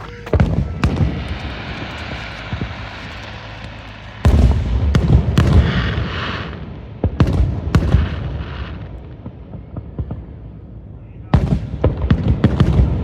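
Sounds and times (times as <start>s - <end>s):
fireworks crackling hiss: 0.0s - 9.0s
fireworks bangs: 0.0s - 10.7s, 11.3s - 13.0s.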